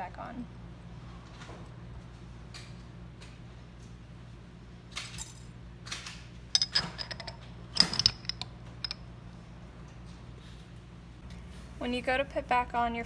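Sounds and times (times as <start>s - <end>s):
metal parts clinking: 5.0s - 5.5s, 6.5s - 9.0s.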